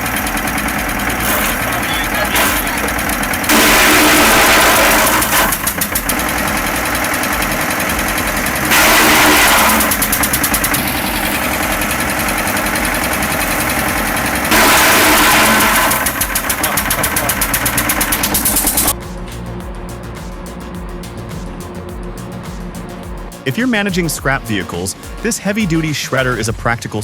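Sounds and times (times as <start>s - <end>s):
wood chipper running: 0.0s - 19.0s.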